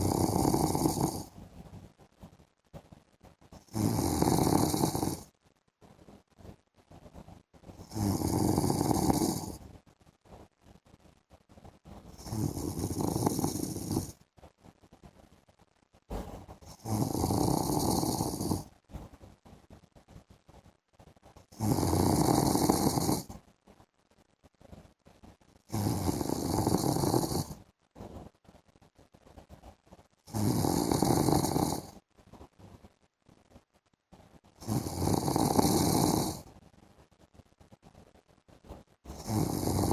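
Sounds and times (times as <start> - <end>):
faint breathing: 0.0 - 1.3
man snoring: 0.0 - 1.3, 3.6 - 5.3, 7.8 - 9.6, 12.2 - 14.2, 16.7 - 18.6, 21.6 - 23.3, 25.7 - 27.6, 30.3 - 32.0, 34.6 - 36.5, 39.1 - 39.9.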